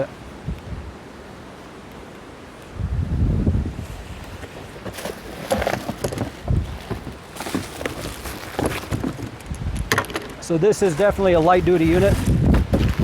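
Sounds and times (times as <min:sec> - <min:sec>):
plastic packaging rustling: 0:04.8 - 0:13.0
sharp clicks and knocks: 0:08.6 - 0:10.4.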